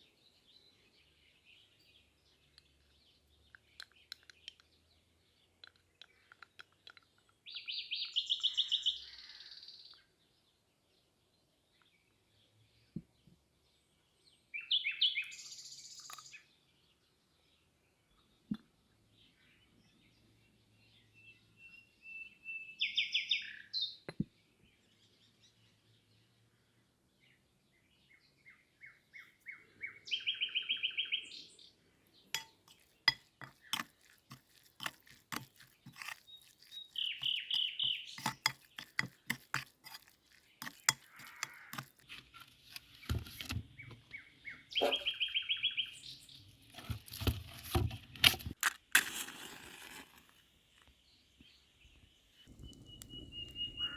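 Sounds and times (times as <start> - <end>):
songbird trilling: 7.4 - 9.5, 29.8 - 31.5, 35.8 - 38.8, 43.8 - 46.3, 52.5 - 53.9.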